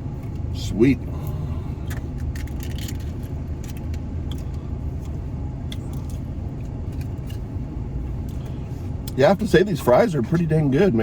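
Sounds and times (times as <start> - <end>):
car engine idling: 0.0 - 11.0
food packaging crinkling: 2.2 - 3.9.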